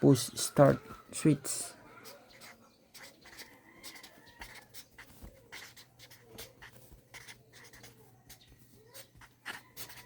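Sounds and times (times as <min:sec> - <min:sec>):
scratching and clicking handling noises: 0:02.4 - 0:10.0.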